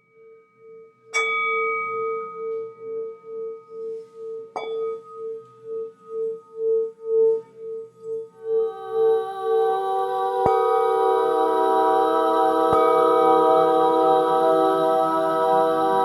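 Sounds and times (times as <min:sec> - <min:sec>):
singing bowl ringing: 0:08.3 - 0:16.0
singing bowl strikes: 0:08.4 - 0:16.0.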